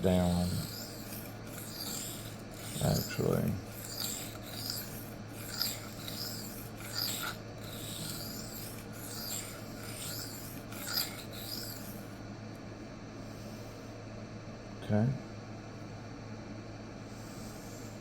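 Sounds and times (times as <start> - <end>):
knife scraping on sharpening plate: 0.0 - 12.1.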